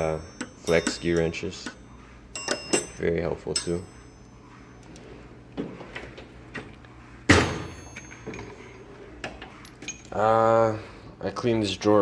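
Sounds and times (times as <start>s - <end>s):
ringing metallic bang: 7.3s - 8.2s.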